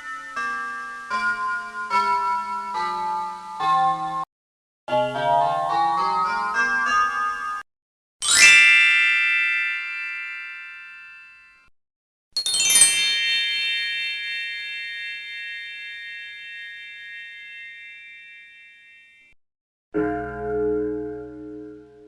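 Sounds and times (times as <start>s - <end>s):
bell ringing: 12.4s - 19.4s
higher-pitched bell struck: 20.0s - 22.0s.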